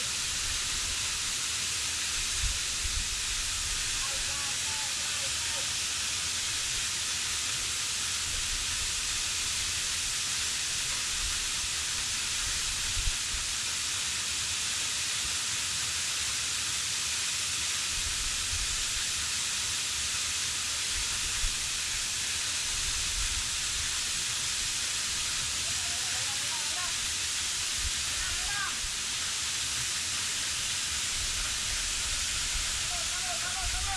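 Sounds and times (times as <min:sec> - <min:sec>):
waterfall hiss: 0:00.0 - 0:33.9.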